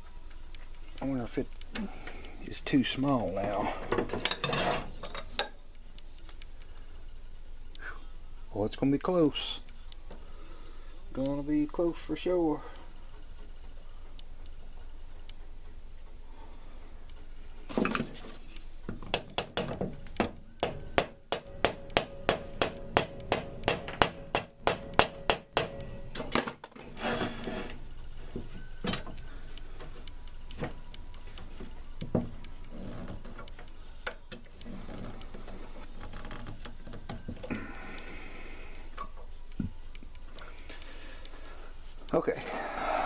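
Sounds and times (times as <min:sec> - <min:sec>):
sharp knocks and clacks: 0:18.9 - 0:25.9.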